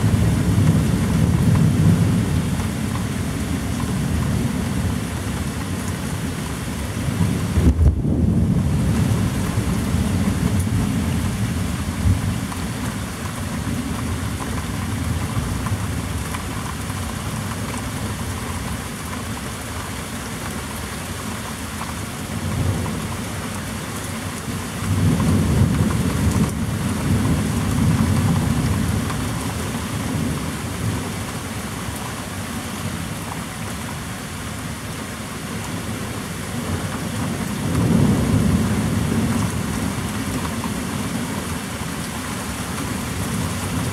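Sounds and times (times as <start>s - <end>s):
heavy rain falling: 0.0s - 43.9s
thunder rolling: 7.2s - 9.0s.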